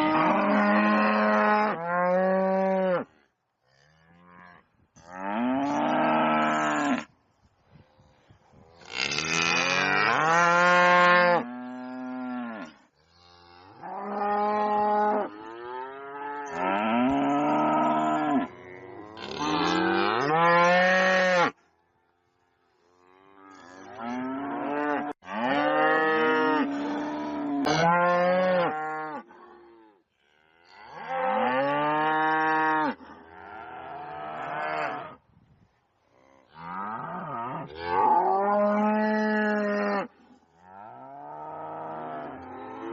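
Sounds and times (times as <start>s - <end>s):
cows mooing: 0.0s - 3.1s, 3.8s - 7.1s, 8.8s - 21.6s, 23.0s - 29.8s, 36.2s - 42.9s.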